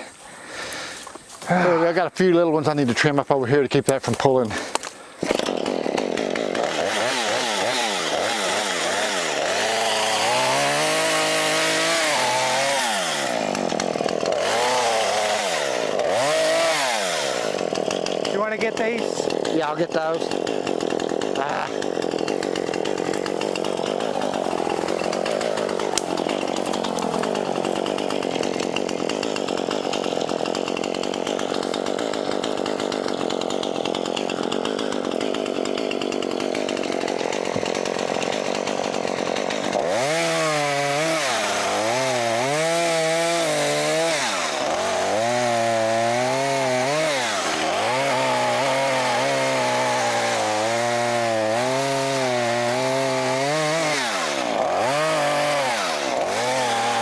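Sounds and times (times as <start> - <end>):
chainsaw cutting brush: 0.0 - 57.0
chainsaw revving through cuts: 4.2 - 57.0.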